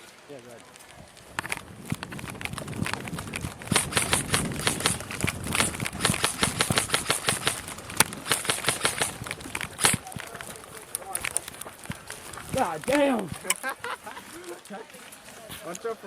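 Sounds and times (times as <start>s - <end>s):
sharp snaps and clicks: 1.2s - 13.8s
airsoft guns firing rapidly: 3.4s - 11.3s.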